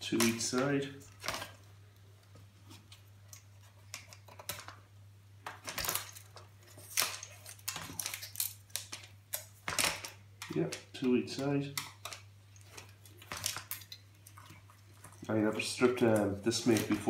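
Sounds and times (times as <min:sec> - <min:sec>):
clicks taps and scrapes of small parts: 0:02.2 - 0:04.8.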